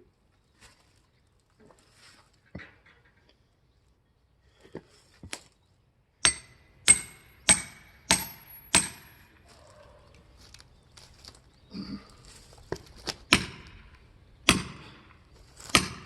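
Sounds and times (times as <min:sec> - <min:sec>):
sharp metallic strikes ringing: 0:06.2 - 0:09.3.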